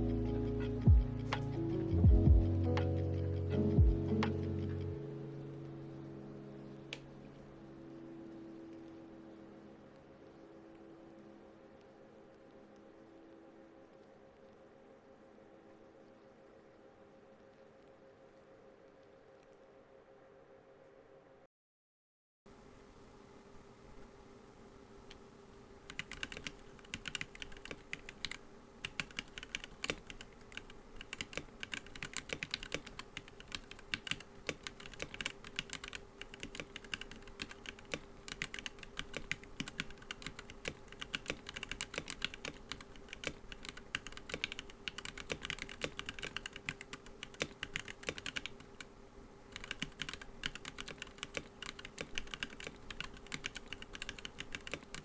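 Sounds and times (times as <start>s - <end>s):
faint steady hum: 0.0s - 21.5s, 22.5s - 55.0s
mechanical keyboard typing: 25.8s - 48.9s, 49.5s - 55.0s.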